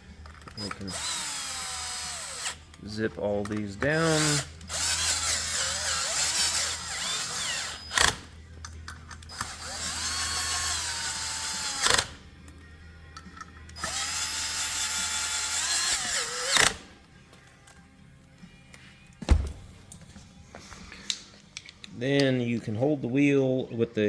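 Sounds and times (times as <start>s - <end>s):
power drill whining: 0.4s - 2.8s, 3.8s - 8.3s, 9.2s - 12.2s, 13.7s - 16.8s
bolt seating sharply: 19.2s - 20.0s.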